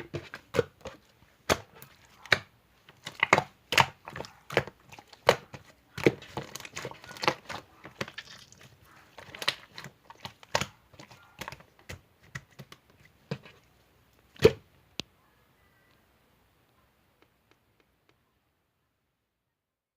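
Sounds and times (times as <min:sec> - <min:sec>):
slime crackling and popping: 0:02.3 - 0:11.6.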